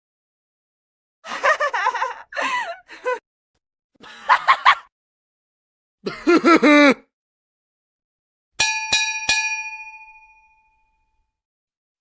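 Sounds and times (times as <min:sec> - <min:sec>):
metallic bell ding: 0:08.6 - 0:11.3.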